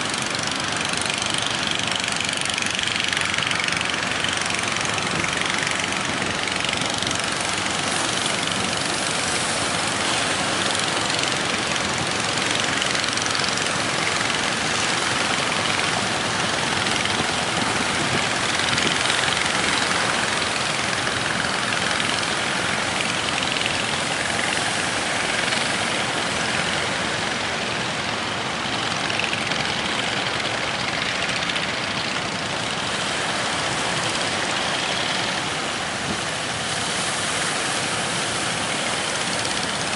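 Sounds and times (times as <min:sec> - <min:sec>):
boat engine running: 0:00.0 - 0:39.9
waves: 0:00.0 - 0:39.9
strong wind: 0:14.2 - 0:21.5.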